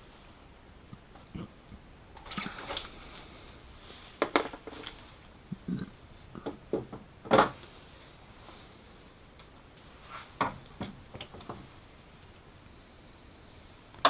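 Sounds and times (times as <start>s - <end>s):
rustle: 2.2s - 6.4s, 7.6s - 14.0s.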